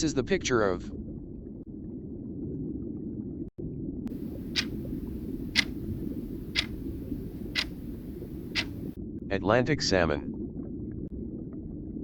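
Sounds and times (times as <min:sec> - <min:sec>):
clock ticking: 0:04.1 - 0:09.0.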